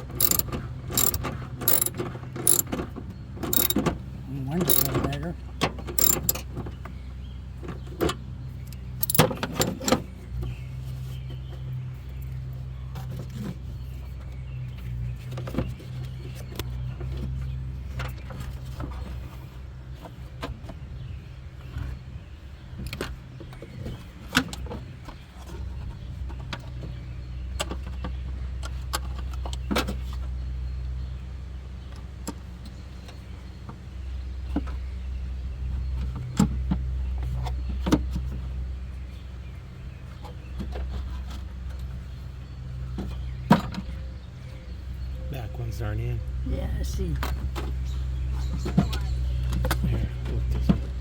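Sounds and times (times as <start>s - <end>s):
clicks of parts handled: 0.2s - 2.7s, 3.5s - 3.9s, 4.6s - 5.1s, 6.0s - 6.4s, 9.0s - 9.8s.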